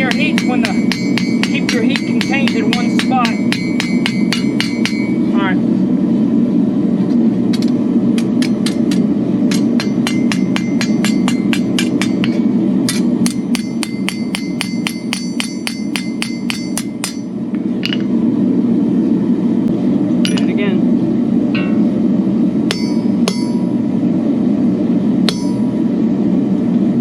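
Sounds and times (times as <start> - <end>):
hammer striking steel on anvil: 0.0 - 5.4, 7.6 - 18.1, 20.2 - 20.6, 21.6 - 21.9, 22.7 - 23.8, 25.2 - 25.8.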